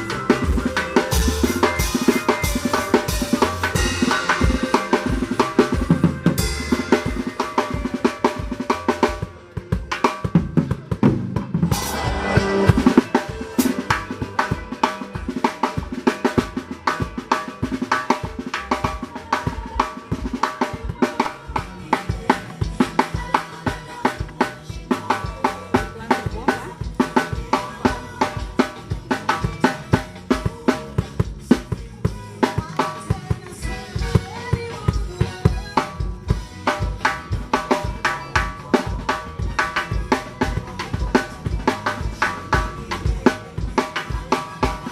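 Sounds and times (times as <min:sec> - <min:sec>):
drum kit fast groove: 0:00.0 - 0:44.9
cymbal crash: 0:11.7 - 0:14.2.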